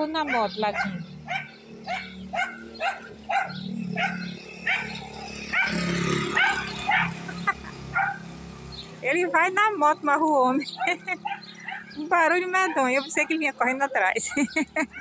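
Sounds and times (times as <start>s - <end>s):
motorcycle engine running: 0.0s - 15.0s
dog barking: 0.2s - 8.3s, 10.8s - 12.0s, 12.6s - 13.4s, 14.2s - 15.0s.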